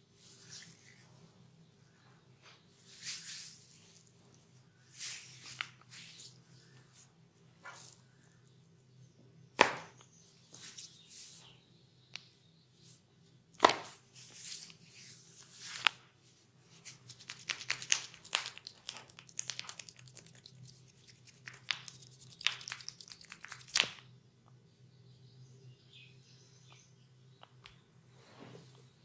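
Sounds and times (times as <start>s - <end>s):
hands rubbing skin: 16.7s - 24.0s.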